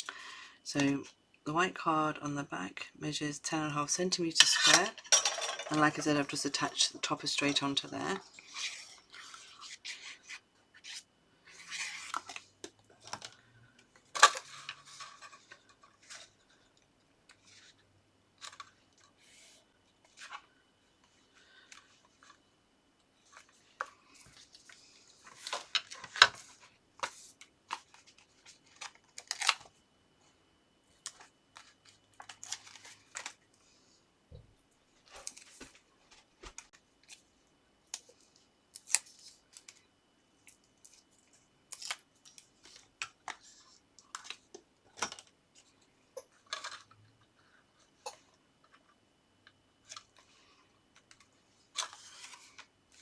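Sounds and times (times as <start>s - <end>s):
paper rustling and scraping: 8.3s - 12.5s, 51.8s - 53.0s.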